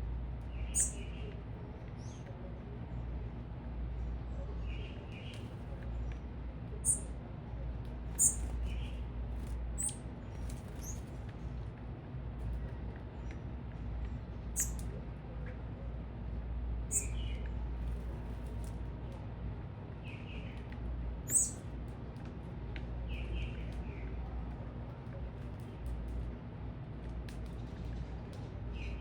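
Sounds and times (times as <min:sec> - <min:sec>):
low city rumble: 0:00.0 - 0:29.0
small birds chirping: 0:00.4 - 0:02.3, 0:06.8 - 0:07.1, 0:08.1 - 0:09.1, 0:09.7 - 0:11.2, 0:14.4 - 0:15.0, 0:16.9 - 0:17.6, 0:20.0 - 0:21.7, 0:23.0 - 0:24.2.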